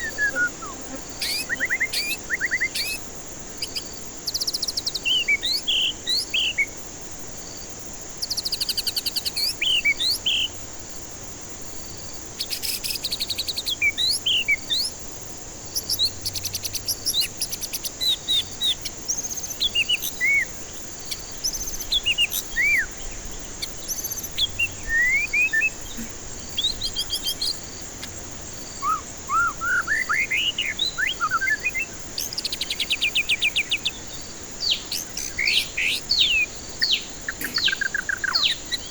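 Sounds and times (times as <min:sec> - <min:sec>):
bird singing whistled notes: 0:00.0 - 0:06.8, 0:08.2 - 0:10.6, 0:12.4 - 0:15.0, 0:15.7 - 0:38.9
steady hiss: 0:00.0 - 0:38.9
bird rattling trills: 0:36.8 - 0:38.6.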